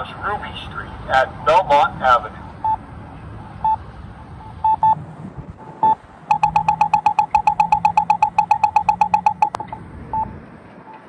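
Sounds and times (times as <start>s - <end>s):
crossing signal locator beep: 1.2s - 2.8s, 3.4s - 5.0s, 5.6s - 11.0s
fast ticking crossing signal: 1.2s - 11.0s.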